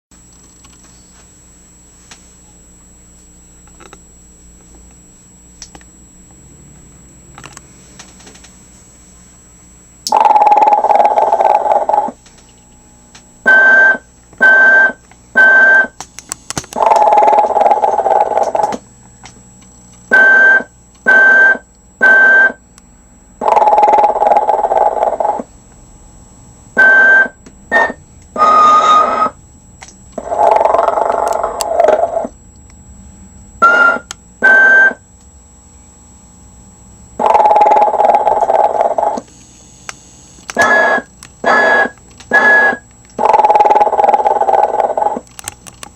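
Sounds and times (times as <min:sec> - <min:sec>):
faint steady hum: 0:00.1 - 0:45.9
recorded snoring from small speaker: 0:10.1 - 0:12.2, 0:16.8 - 0:18.7, 0:23.4 - 0:25.5, 0:30.2 - 0:32.3, 0:37.2 - 0:39.3, 0:40.6 - 0:45.2.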